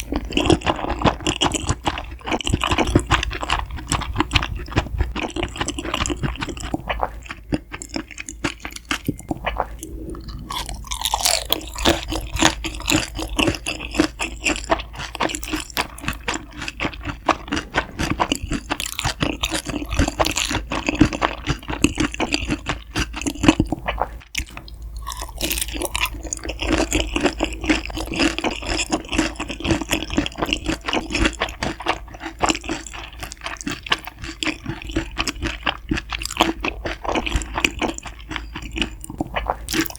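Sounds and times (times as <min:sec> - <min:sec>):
crunching and chewing crisp food: 0:00.0 - 0:39.9.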